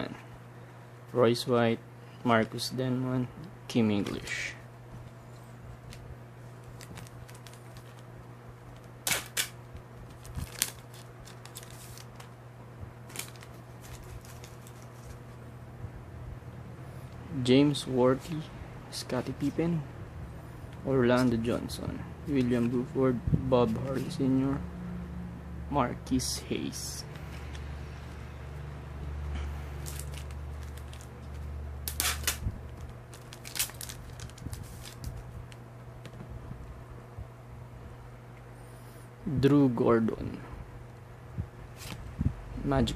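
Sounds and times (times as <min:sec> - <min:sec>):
card wrapper rustling and clicking: 0:06.6 - 0:08.1, 0:08.7 - 0:12.4, 0:13.1 - 0:15.2, 0:29.8 - 0:36.2.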